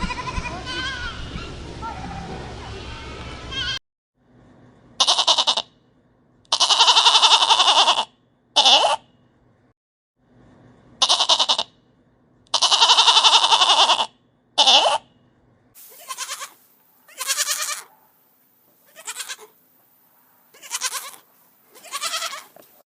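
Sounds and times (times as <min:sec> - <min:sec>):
goats bleating: 0:00.0 - 0:01.2, 0:03.5 - 0:03.8, 0:05.0 - 0:05.6, 0:06.5 - 0:09.0, 0:11.0 - 0:11.7, 0:12.5 - 0:15.0, 0:15.9 - 0:17.9, 0:18.9 - 0:19.5, 0:20.5 - 0:22.6.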